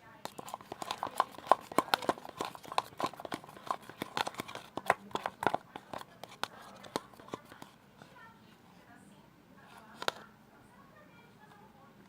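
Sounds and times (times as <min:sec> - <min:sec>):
slime stirred with sticky clicks: 0:00.2 - 0:07.7.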